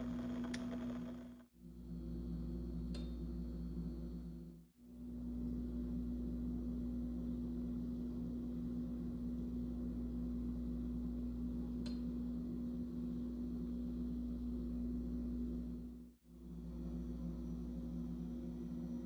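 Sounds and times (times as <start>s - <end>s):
electric motor hum: 0.0s - 1.4s.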